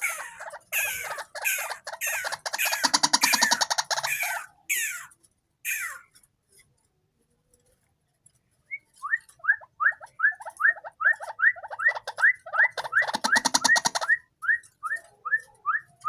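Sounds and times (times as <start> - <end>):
bird harsh call: 0.0 - 6.0.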